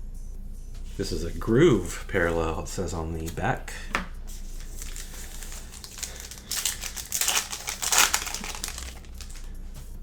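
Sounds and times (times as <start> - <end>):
card pack wrapper crinkling and tearing: 4.3 - 9.6.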